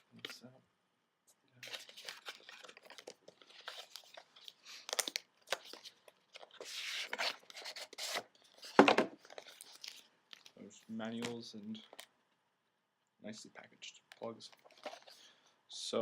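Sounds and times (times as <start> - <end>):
packaging rustling: 1.6 - 12.1, 14.2 - 15.3.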